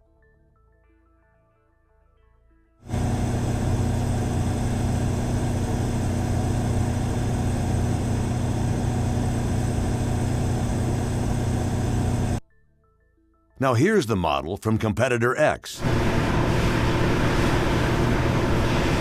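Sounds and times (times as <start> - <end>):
generator engine droning: 2.9 - 12.4, 15.8 - 19.0.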